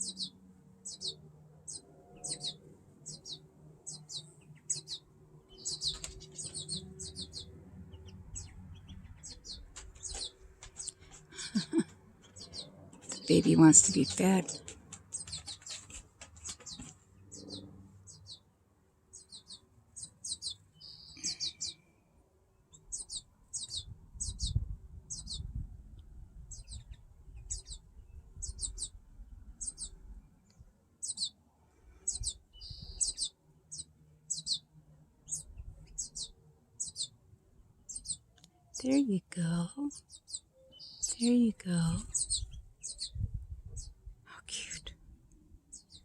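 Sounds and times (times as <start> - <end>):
fledgling bird begging chirps: 0.0 - 15.8, 19.1 - 21.8, 22.7 - 25.5, 26.5 - 27.8, 28.4 - 29.0, 32.1 - 37.2, 38.8 - 43.9
harsh bird calls: 0.0 - 18.5, 19.1 - 21.9, 22.7 - 25.5, 26.5 - 27.8, 29.6 - 30.0, 31.0 - 37.2, 39.8 - 43.2.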